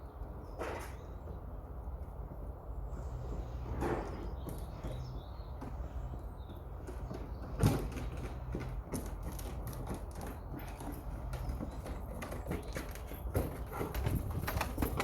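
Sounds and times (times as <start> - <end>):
knocks clicks and creaks: 3.8 - 15.0.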